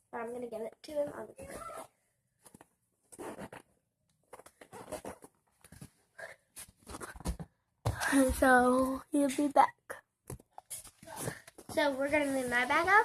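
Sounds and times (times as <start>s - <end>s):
bag and clothing rustling: 11.0s - 13.0s.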